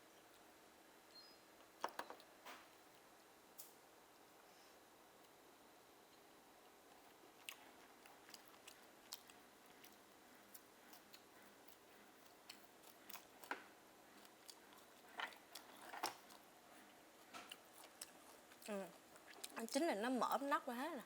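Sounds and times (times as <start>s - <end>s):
person chewing with wet mouth clicks: 6.9s - 13.5s, 14.2s - 16.5s.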